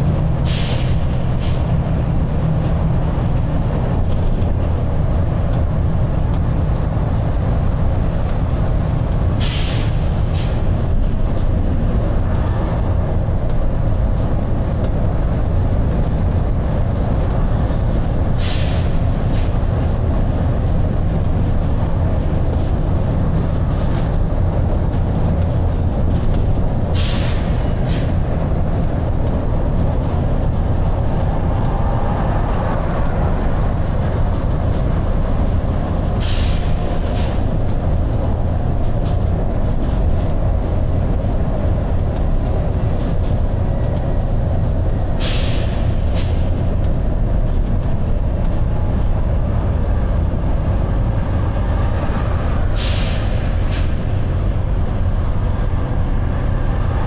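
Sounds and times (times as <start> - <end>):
bus diesel engine drone: 0.0 - 57.0
air brake hisses: 0.4 - 1.6, 9.4 - 10.6, 18.4 - 19.6, 27.0 - 28.1, 36.2 - 37.4, 45.2 - 46.5, 52.8 - 54.1.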